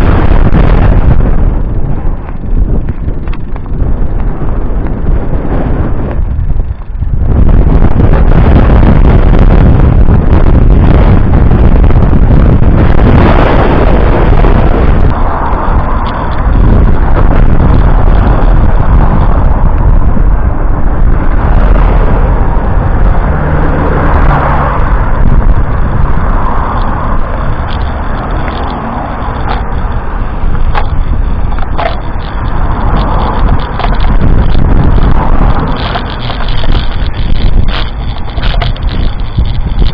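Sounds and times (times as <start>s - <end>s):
strong wind buffeting microphone: 0.0s - 39.9s.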